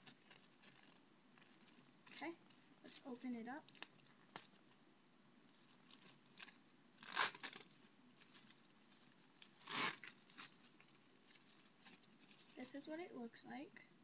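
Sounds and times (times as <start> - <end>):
plastic packaging ripping: 0.0 - 4.8, 5.5 - 12.7
plastic crinkling and rustling: 0.0 - 13.1.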